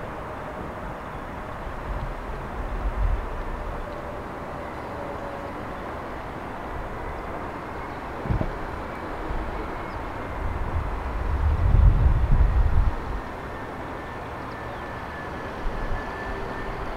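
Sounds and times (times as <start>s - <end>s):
jet engine hiss and whine: 0.0s - 16.9s
wind gusts on microphone: 8.0s - 13.6s.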